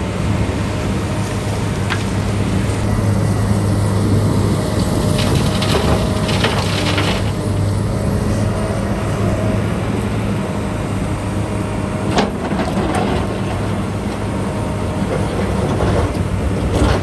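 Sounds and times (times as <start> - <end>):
diesel engine running: 0.0 - 17.0
crunching and scraping: 0.5 - 8.6, 12.1 - 17.0.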